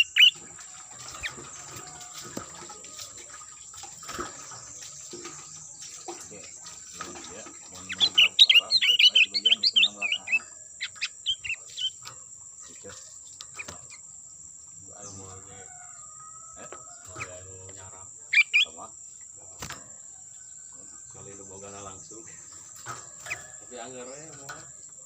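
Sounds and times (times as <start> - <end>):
bird chattering chirps: 0.0 - 0.4, 4.3 - 14.1, 17.1 - 18.9, 21.1 - 24.5.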